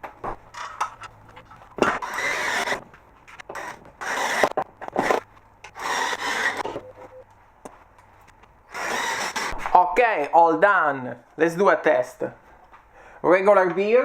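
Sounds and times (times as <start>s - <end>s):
screws driven into wall: 1.8s - 2.8s, 3.4s - 6.8s, 8.7s - 9.7s.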